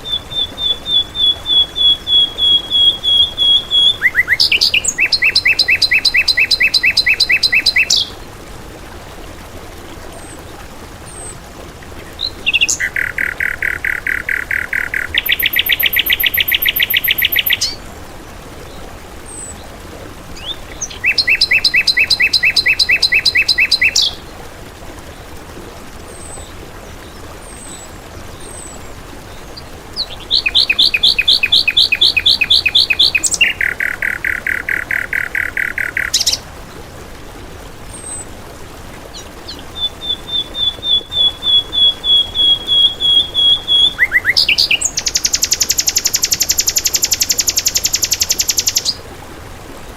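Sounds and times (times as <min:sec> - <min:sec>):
songbird rapid repeated notes: 0:12.5 - 0:17.8, 0:30.0 - 0:36.4, 0:39.5 - 0:49.0.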